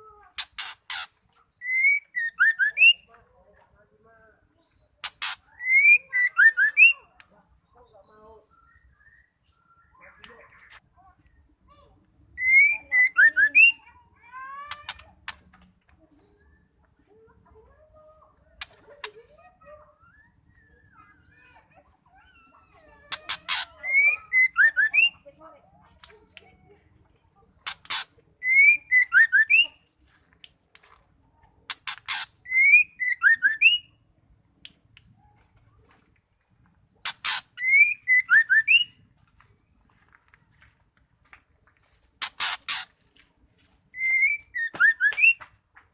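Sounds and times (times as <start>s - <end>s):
bird singing whistled notes: 1.5s - 3.1s, 4.6s - 7.2s, 7.8s - 10.0s, 12.4s - 13.9s, 19.8s - 21.3s, 23.5s - 25.2s, 28.4s - 29.8s, 32.4s - 34.0s, 37.6s - 39.0s, 43.9s - 45.5s.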